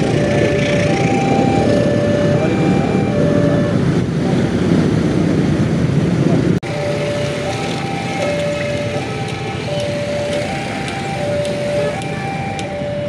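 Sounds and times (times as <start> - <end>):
level crossing alarm: 0.0 - 3.9, 6.6 - 13.0
train rumbling past: 0.0 - 13.0.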